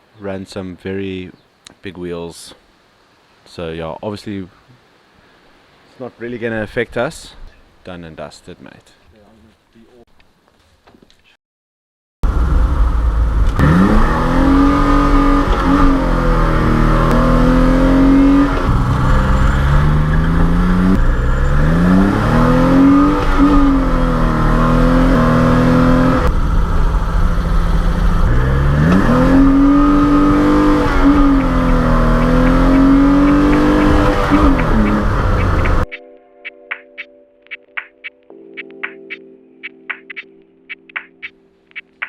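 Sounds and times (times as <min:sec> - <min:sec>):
car engine revving: 0:12.2 - 0:35.9.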